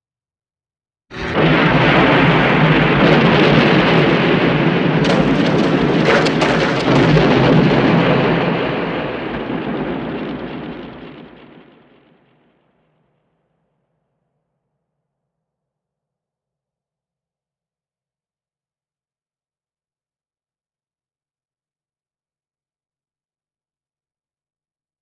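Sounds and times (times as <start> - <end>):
sharp cracks: 1.1 - 11.9
explosion rumble: 1.1 - 12.2.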